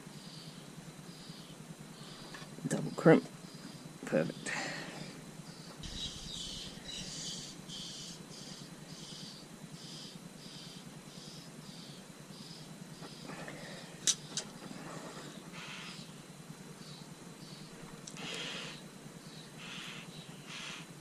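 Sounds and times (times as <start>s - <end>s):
high-pitched rhythmic chirping: 5.5s - 13.2s.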